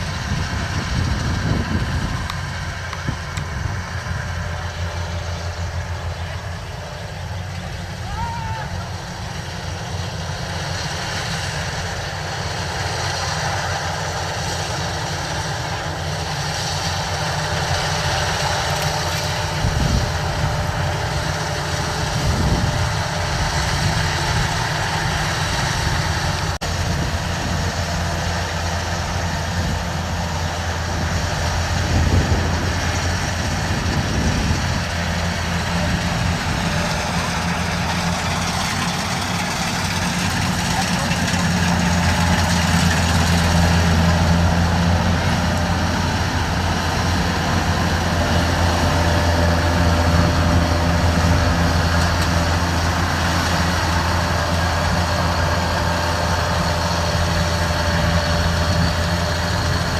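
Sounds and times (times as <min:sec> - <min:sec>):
combine harvester running: 0:00.0 - 0:59.9.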